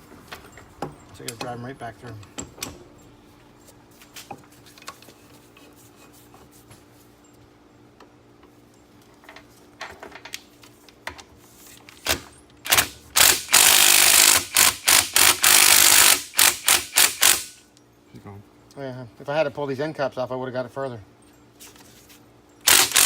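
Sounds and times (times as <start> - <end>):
impact tool running: 12.1 - 17.6, 22.6 - 23.0.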